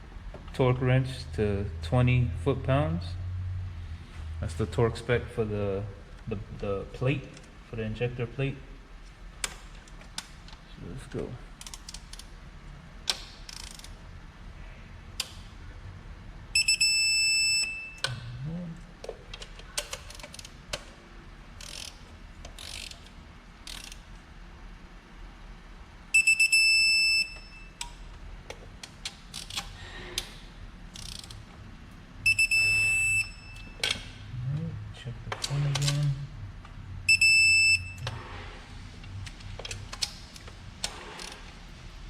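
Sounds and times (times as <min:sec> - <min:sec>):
electronic torque wrench beeping: 0:16.6 - 0:18.1, 0:26.2 - 0:27.8, 0:32.2 - 0:33.8, 0:37.1 - 0:38.1.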